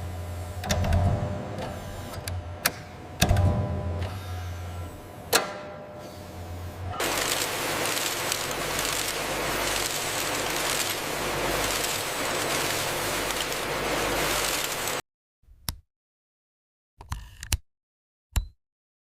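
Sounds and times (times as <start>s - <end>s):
rushing machine noise with hum: 0.0s - 15.0s.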